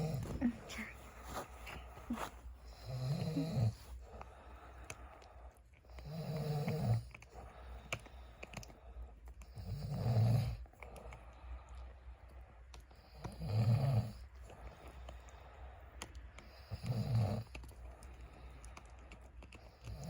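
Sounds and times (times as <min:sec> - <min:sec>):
man snoring: 0:00.0 - 0:00.5, 0:02.8 - 0:03.8, 0:13.4 - 0:14.2.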